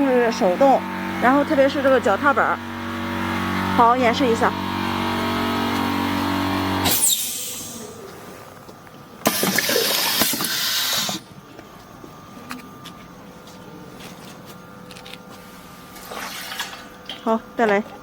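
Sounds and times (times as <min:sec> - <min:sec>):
air compressor motor hum: 0:00.0 - 0:17.7
compressed air hiss: 0:06.8 - 0:07.9, 0:09.3 - 0:11.2.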